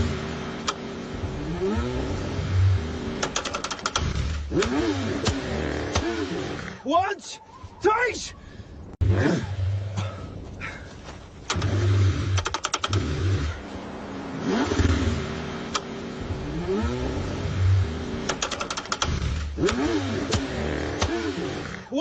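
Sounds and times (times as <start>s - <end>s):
car engine cranking: 0.0s - 6.9s, 11.4s - 21.9s
rapid clicking: 3.2s - 6.1s, 11.5s - 13.0s, 18.2s - 21.1s.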